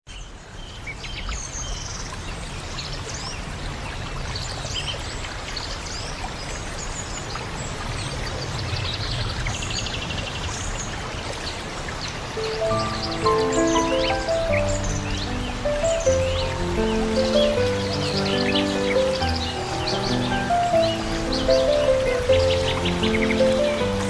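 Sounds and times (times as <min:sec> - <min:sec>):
running water: 0:03.3 - 0:24.0
birds chirping and whistling: 0:12.4 - 0:24.0.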